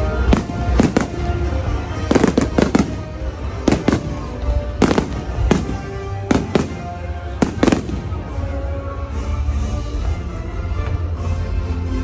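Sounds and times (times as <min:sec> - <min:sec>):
music playing: 0:00.0 - 0:12.0
fireworks bangs: 0:00.1 - 0:08.3.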